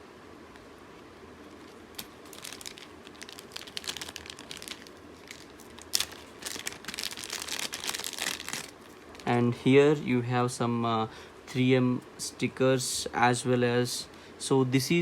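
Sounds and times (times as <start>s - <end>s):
plastic packaging crinkling: 1.5s - 9.4s.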